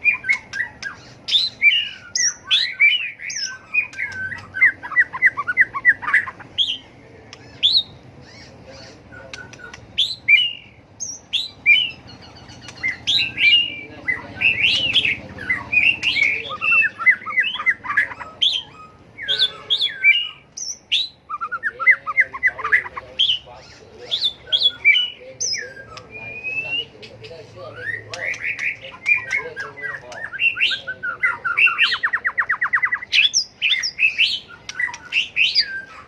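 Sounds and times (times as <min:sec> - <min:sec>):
bird singing varied whistles: 0:00.0 - 0:06.8, 0:24.1 - 0:27.0, 0:27.8 - 0:36.0.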